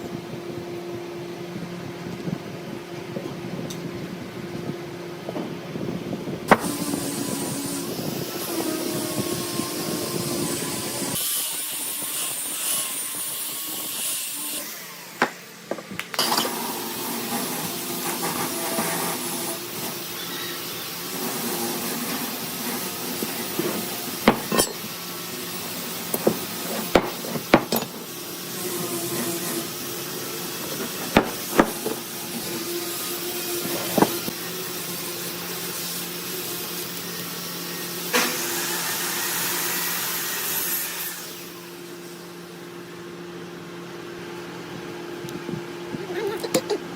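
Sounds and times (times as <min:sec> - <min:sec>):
woodworking machine humming: 0:14.2 - 0:42.0
sharp knocks of wood: 0:26.2 - 0:27.8.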